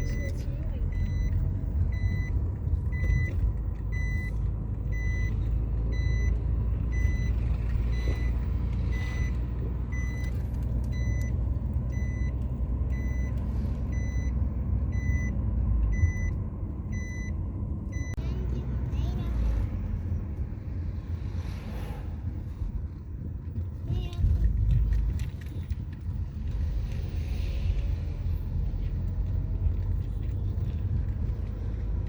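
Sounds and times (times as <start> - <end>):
short electronic beeps: 0.0 - 4.3, 4.9 - 10.3, 10.9 - 16.3, 16.9 - 18.2.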